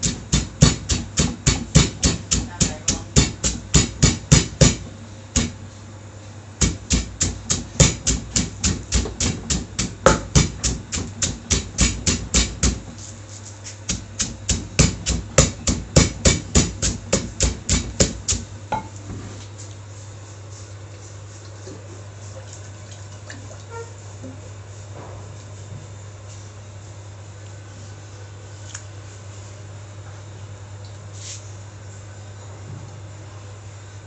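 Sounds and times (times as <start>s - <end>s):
wooden pestle pounding in mortar: 0.0s - 5.6s, 6.6s - 13.0s, 13.8s - 18.9s.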